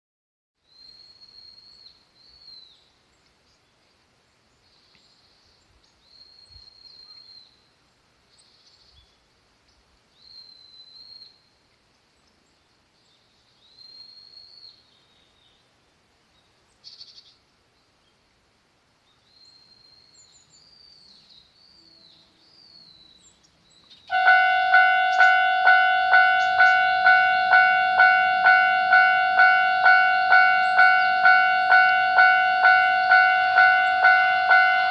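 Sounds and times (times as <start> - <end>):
songbird singing: 0.6 - 34.9
railroad crossing bell: 24.1 - 34.9.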